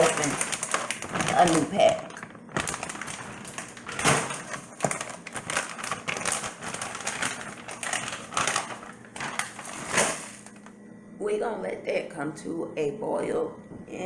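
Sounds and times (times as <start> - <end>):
plastic packaging crinkling: 0.0 - 10.7.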